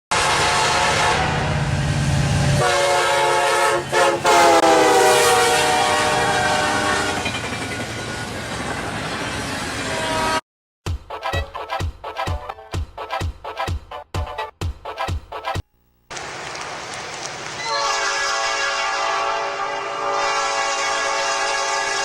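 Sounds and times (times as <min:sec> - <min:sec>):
train air horn chord: 0:00.1 - 0:01.7, 0:02.6 - 0:07.2, 0:09.9 - 0:10.4, 0:17.6 - 0:22.0
train rumble: 0:00.4 - 0:10.3.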